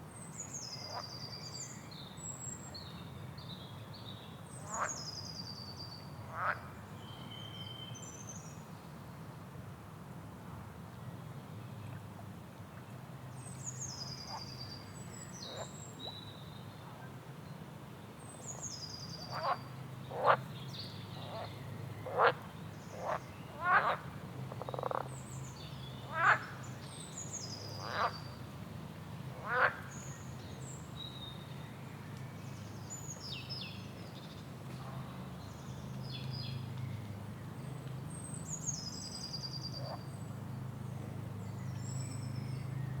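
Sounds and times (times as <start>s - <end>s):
frog croaking: 26.1s - 26.5s, 29.4s - 29.8s.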